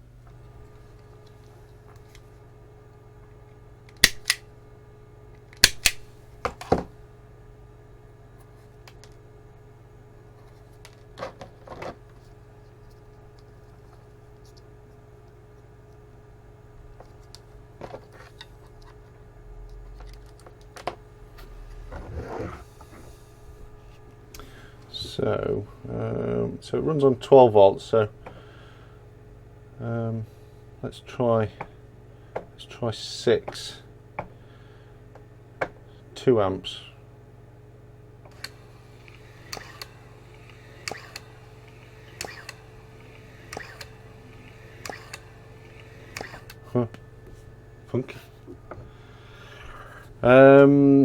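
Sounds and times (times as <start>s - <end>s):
low electrical hum: 0.0s - 51.0s
small parts clicking on workbench: 3.9s - 4.4s, 5.6s - 6.1s
small motor humming: 38.2s - 50.0s.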